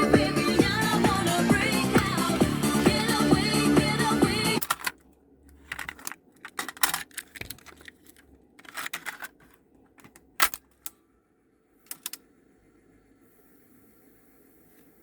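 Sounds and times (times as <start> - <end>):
clicks and rattles of small parts: 4.6 - 11.0, 11.8 - 12.2.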